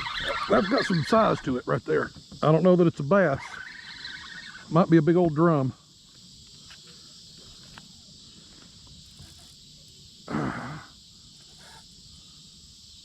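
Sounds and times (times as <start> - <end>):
high-pitched insect drone: 0.0 - 13.0
person grunting: 10.3 - 10.9.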